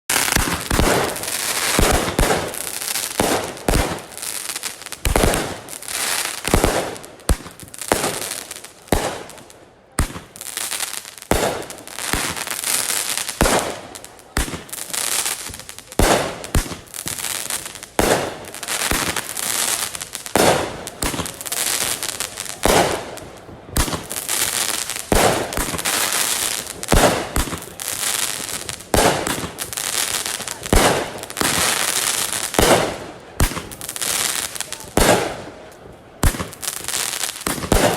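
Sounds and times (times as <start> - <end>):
fireworks bangs: 0.1 - 37.9
fireworks hissing crackle: 0.1 - 37.9.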